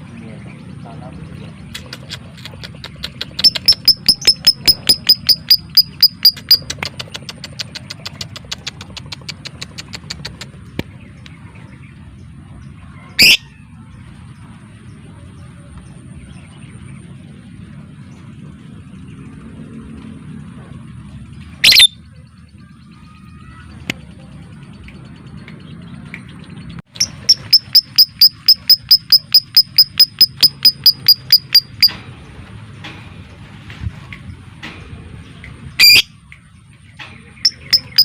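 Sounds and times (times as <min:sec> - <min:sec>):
lovebird clicking chirps: 0:01.7 - 0:11.4, 0:27.0 - 0:32.0, 0:37.3 - 0:38.0
loud shrill bird calls: 0:13.0 - 0:13.6, 0:21.6 - 0:22.0, 0:37.4 - 0:38.0.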